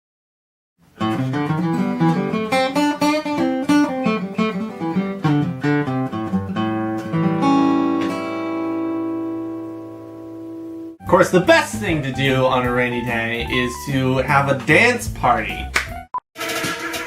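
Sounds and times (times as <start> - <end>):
acoustic guitar picking: 1.0 - 15.7.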